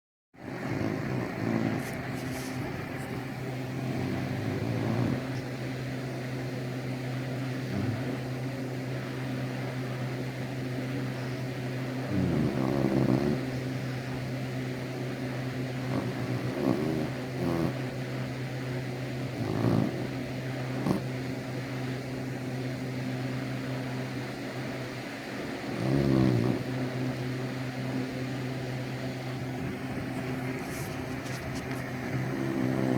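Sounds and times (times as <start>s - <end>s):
pet snoring: 0.4s - 6.2s, 7.2s - 10.2s, 10.8s - 22.3s, 23.2s - 32.9s
steady low hum: 0.4s - 32.9s
loud snorts: 0.5s - 5.6s, 7.6s - 8.4s, 11.1s - 14.2s, 15.7s - 17.9s, 19.3s - 21.2s, 25.4s - 27.2s, 30.0s - 32.9s.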